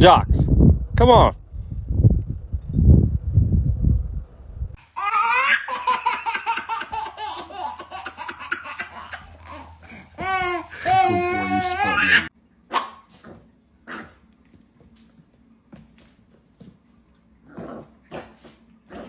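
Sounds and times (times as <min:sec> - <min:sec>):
person laughing hard: 0:10.8 - 0:12.3.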